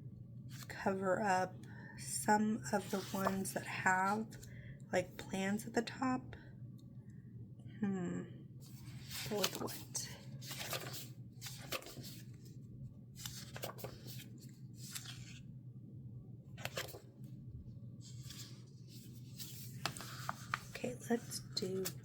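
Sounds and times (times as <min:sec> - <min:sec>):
paper rustling and scraping: 0:02.8 - 0:03.6, 0:08.7 - 0:12.5, 0:13.2 - 0:15.4, 0:16.6 - 0:17.0, 0:18.0 - 0:22.0.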